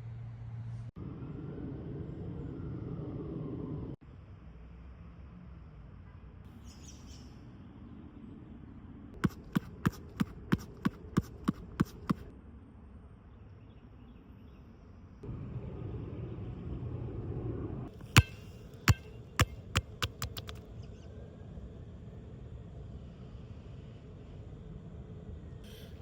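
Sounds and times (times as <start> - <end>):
faint outdoor hum: 0.0 - 26.0
faint bird chirps: 6.5 - 7.6
basketball bouncing on hard court: 9.2 - 12.2, 18.0 - 20.6.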